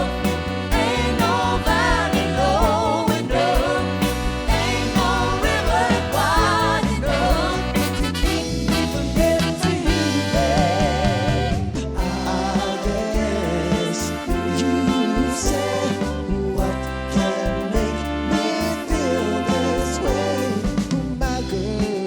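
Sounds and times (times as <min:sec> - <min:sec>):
soul song with full band: 0:00.0 - 0:22.0.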